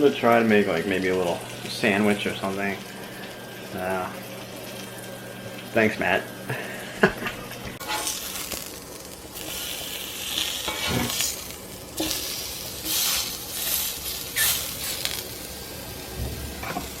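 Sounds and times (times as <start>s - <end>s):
food sizzling in frying pan: 0.0s - 17.0s
utensil stirring and clinking: 7.7s - 15.5s.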